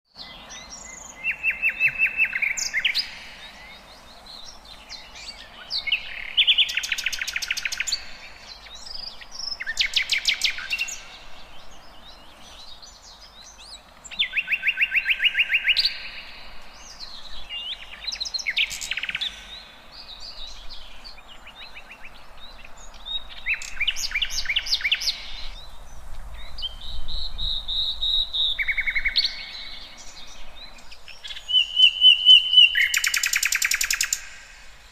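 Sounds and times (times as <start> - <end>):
songbirds trilling: 0.1 - 34.9.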